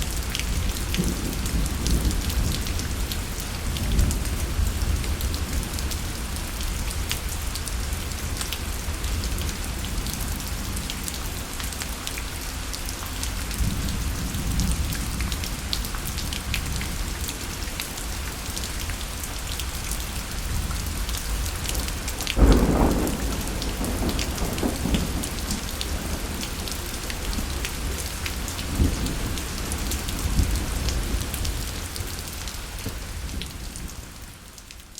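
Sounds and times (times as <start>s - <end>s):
rain pattering: 0.0s - 34.9s
thunder rumbling: 20.5s - 31.7s
loud thunderclap: 22.4s - 26.5s.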